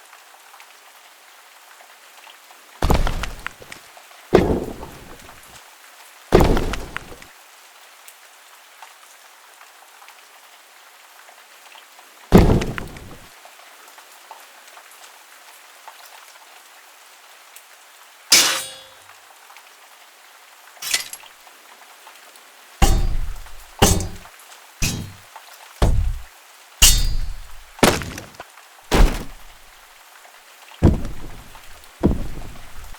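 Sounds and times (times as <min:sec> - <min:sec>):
rain-like ambience: 0:00.0 - 0:32.9
heavy impact hits: 0:02.8 - 0:03.6, 0:04.4 - 0:05.4, 0:06.4 - 0:07.2, 0:12.3 - 0:13.2, 0:22.8 - 0:25.2, 0:25.8 - 0:29.6, 0:30.8 - 0:32.9.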